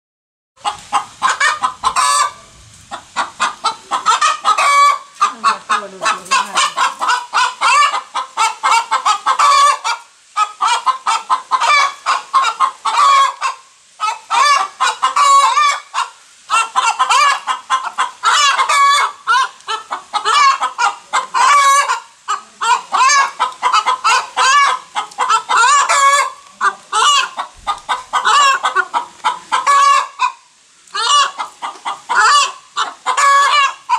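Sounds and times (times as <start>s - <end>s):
hen clucking: 0.6s - 33.9s.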